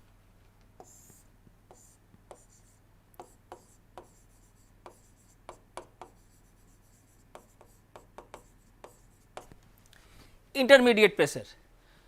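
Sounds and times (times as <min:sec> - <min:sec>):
low electrical hum: 0:00.0 - 0:12.0
pen scratching on paper: 0:00.8 - 0:09.6.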